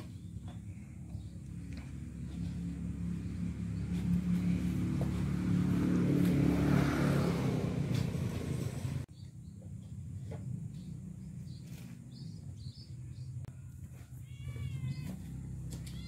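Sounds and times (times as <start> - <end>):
vehicle passing by: 0.2 - 9.1.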